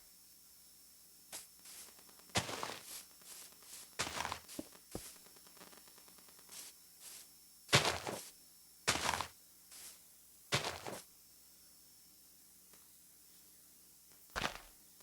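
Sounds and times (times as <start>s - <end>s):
short rustling: 1.4s - 5.2s, 6.5s - 8.3s.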